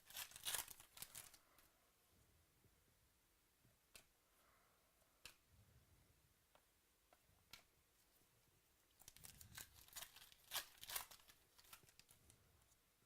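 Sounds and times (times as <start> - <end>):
packaging crinkling and tearing: 0.0 - 1.4, 9.0 - 12.2.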